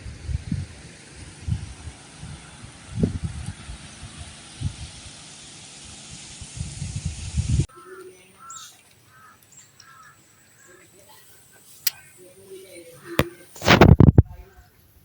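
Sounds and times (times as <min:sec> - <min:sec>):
wind buffeting microphone: 0:00.0 - 0:05.2, 0:05.9 - 0:07.7, 0:13.2 - 0:14.6
bird chirping: 0:07.7 - 0:13.6.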